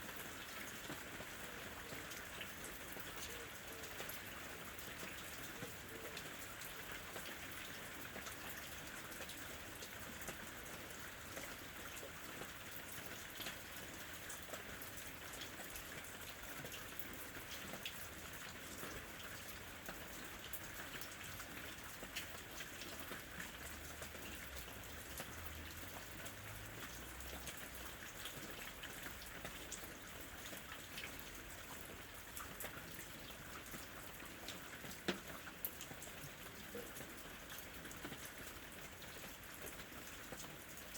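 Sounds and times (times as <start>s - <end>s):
rain drops pattering: 0.0s - 40.9s.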